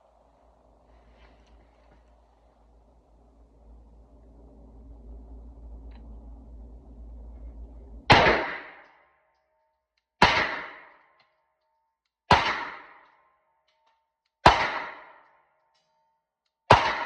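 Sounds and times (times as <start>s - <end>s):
low hum: 0.0s - 17.0s
pistol shots: 8.1s - 8.8s, 10.2s - 10.9s, 12.3s - 13.1s, 14.4s - 15.2s, 16.7s - 17.0s.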